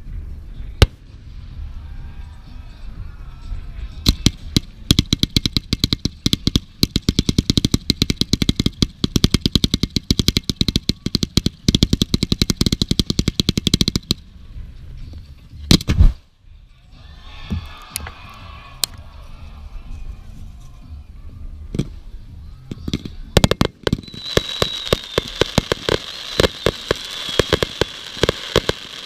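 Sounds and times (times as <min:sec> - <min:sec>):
fireworks bangs: 0:04.0 - 0:14.2, 0:22.8 - 0:29.0.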